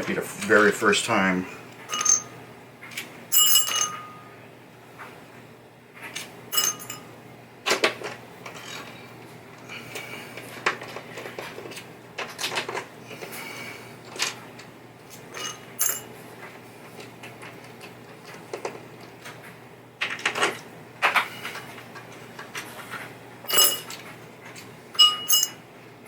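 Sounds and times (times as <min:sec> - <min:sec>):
small metal parts clinking: 0:01.8 - 0:02.3, 0:03.3 - 0:04.2, 0:06.5 - 0:07.0, 0:15.3 - 0:16.1, 0:23.5 - 0:24.0, 0:25.0 - 0:25.6.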